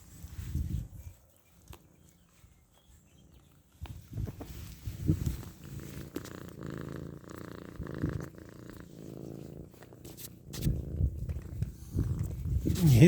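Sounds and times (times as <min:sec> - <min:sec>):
cat purring: 0:04.4 - 0:13.0.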